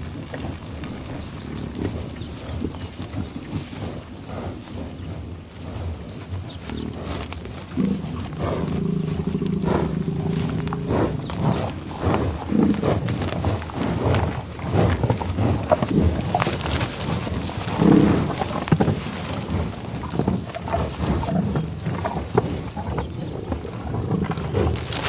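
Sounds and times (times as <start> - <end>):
bison grunting: 0.0 - 25.0
grass being torn and chewed: 6.2 - 22.6, 23.4 - 25.0.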